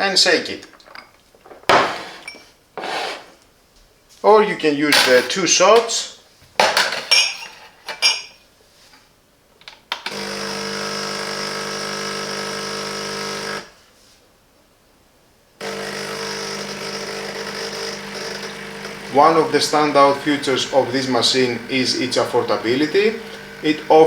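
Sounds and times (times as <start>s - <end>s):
espresso machine pump humming: 10.1s - 13.7s, 15.6s - 24.0s.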